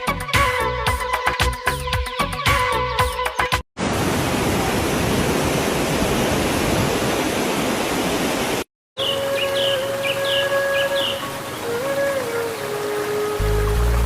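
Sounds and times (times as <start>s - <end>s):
waterfall rushing: 3.8s - 14.0s
birds chirping: 9.0s - 13.0s.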